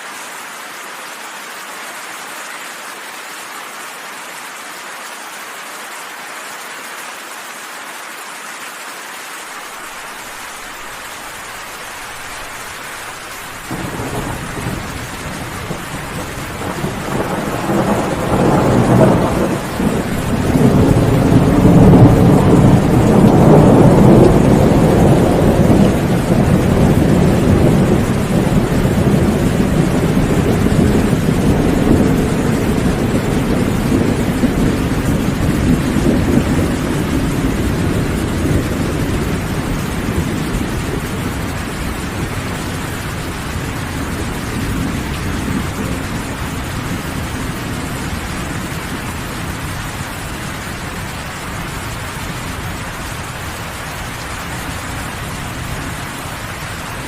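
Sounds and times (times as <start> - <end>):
steady rain falling: 0.0 - 57.0
thunder rumbling: 11.5 - 57.0.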